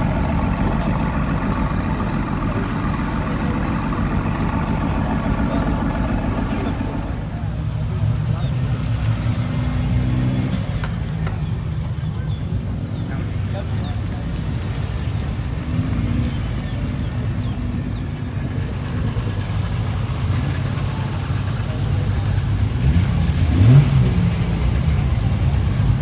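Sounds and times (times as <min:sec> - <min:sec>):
car engine running and revving: 0:00.0 - 0:26.0.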